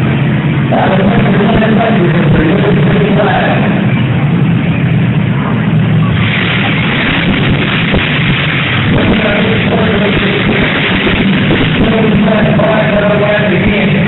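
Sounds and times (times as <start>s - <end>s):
dense steady din: 0.0s - 14.0s
loud rock music: 0.0s - 14.0s.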